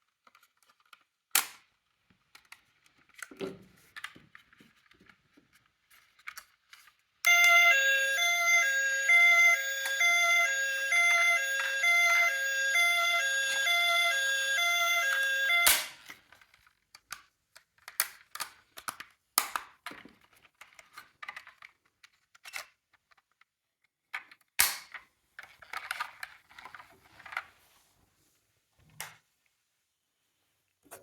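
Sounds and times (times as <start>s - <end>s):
plastic toy cars clattering: 0.0s - 7.2s, 14.3s - 27.6s
toy electronic siren: 7.3s - 16.1s.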